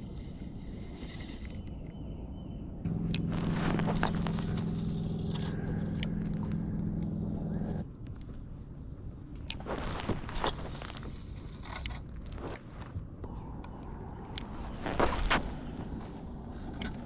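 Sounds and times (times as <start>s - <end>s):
steady motor hum: 2.8s - 7.9s
handling rustling: 2.9s - 6.7s, 9.4s - 16.4s.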